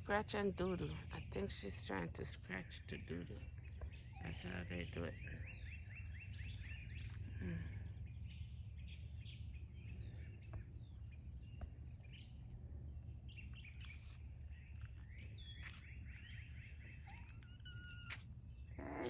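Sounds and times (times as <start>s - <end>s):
low outdoor rumble: 0.0s - 19.0s
small birds chirping: 0.0s - 19.0s.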